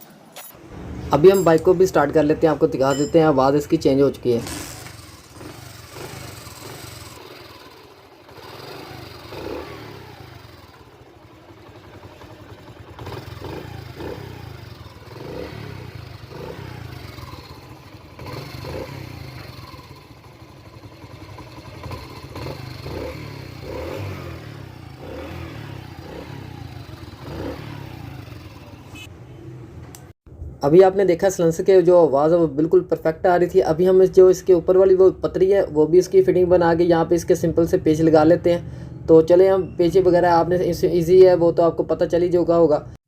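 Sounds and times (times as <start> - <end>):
motorcycle engine revving: 4.2 - 29.9.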